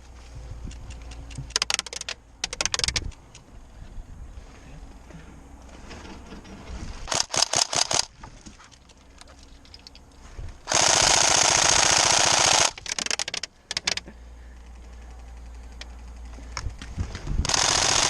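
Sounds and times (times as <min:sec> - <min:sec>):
airsoft gun firing: 0:07.1 - 0:08.1, 0:10.7 - 0:12.8, 0:17.5 - 0:18.0.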